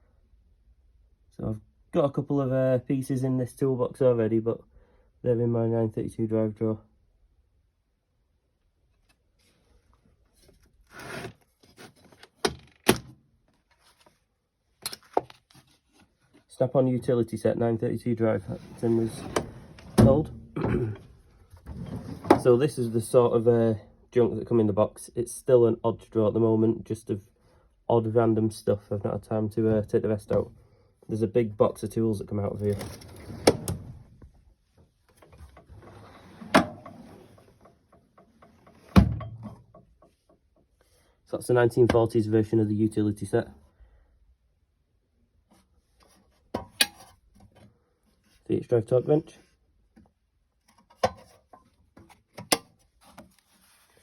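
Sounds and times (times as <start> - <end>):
metal drawer sliding: 18.4 - 22.6, 32.5 - 34.2, 35.2 - 39.7.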